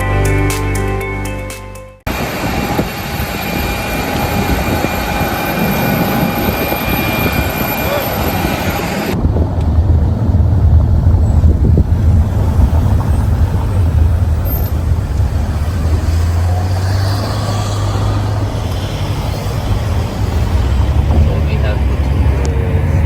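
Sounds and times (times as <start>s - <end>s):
vehicle driving rumble: 2.1s - 23.0s.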